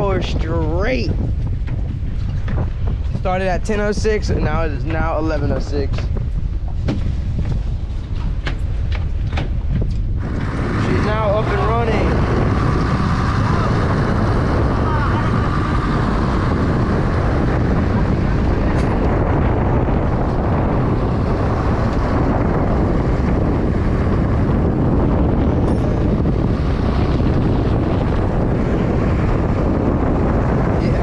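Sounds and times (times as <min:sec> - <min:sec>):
wind buffeting microphone: 0:00.0 - 0:31.0
boat engine running: 0:08.4 - 0:31.0.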